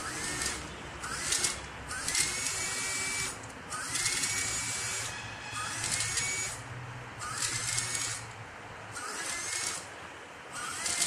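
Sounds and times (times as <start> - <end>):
pump motor whine: 0.0 - 6.6.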